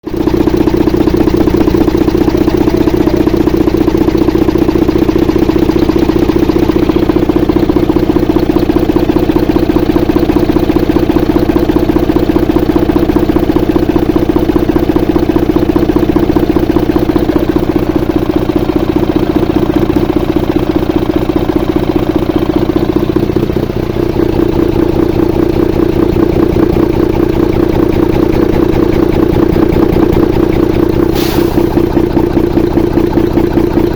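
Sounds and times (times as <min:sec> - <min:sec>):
diesel engine idling: 0:00.0 - 0:33.9
valve train clatter: 0:31.0 - 0:32.8.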